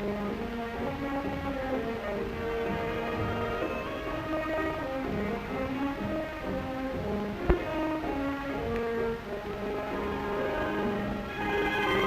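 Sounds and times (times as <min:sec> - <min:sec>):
old film soundtrack hiss: 0:00.0 - 0:12.0
orchestral music: 0:00.0 - 0:12.0.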